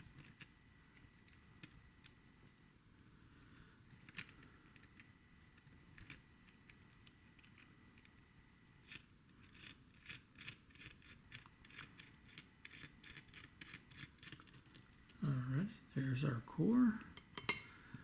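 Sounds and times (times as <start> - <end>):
hand tools clicking on metal: 17.2 - 17.9.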